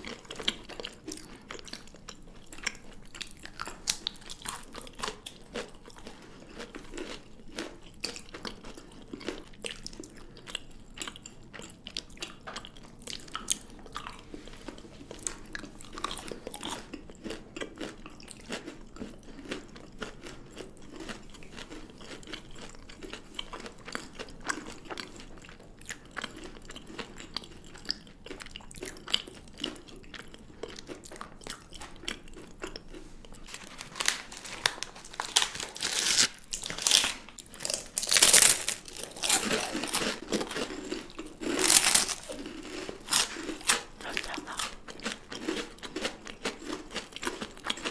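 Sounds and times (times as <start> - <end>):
chewing and crunching chocolate: 0.0 - 47.9.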